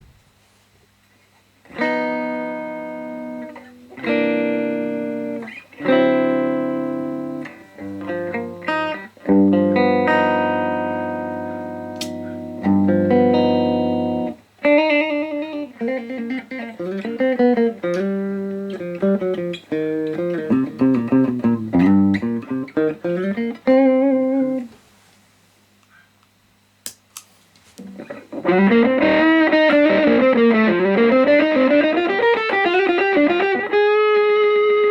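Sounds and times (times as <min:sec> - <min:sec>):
low amp hum: 0:00.0 - 0:14.5, 0:25.6 - 0:32.8
electric guitar chords: 0:01.6 - 0:24.7, 0:27.8 - 0:34.9
electric guitar single-note lines: 0:01.7 - 0:24.7, 0:27.8 - 0:34.9.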